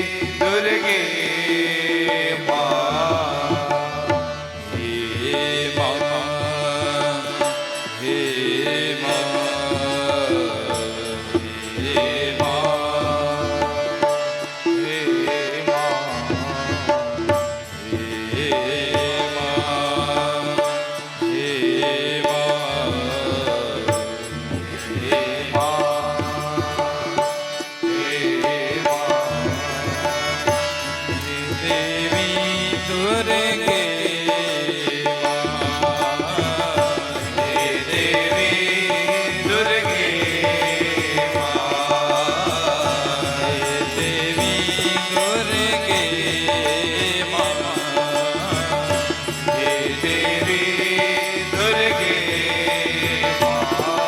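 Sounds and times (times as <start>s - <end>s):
devotional music with tabla: 0.0s - 54.0s.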